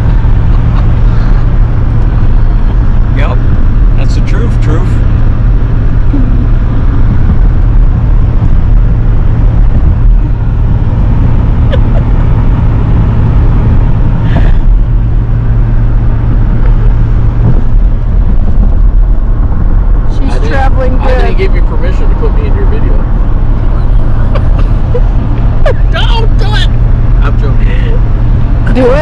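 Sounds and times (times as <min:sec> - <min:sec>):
road and engine noise in vehicle: 0:00.0 - 0:29.0.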